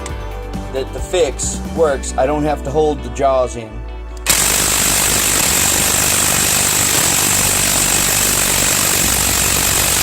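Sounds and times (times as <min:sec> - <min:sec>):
power tool running: 0:04.2 - 0:10.0.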